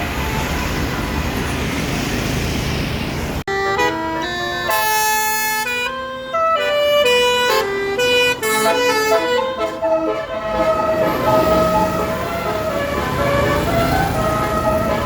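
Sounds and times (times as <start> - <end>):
traffic noise: 0.0 - 15.0
bus horn playing a tune: 3.5 - 15.0.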